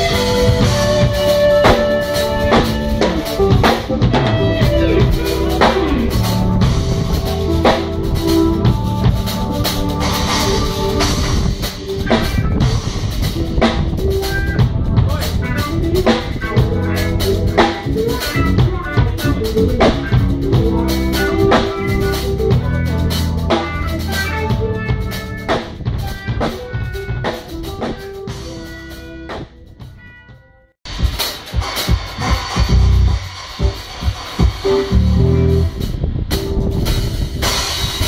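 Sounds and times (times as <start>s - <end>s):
electric keyboard: 0.0s - 30.8s, 33.4s - 38.0s
drum kit: 0.0s - 38.0s.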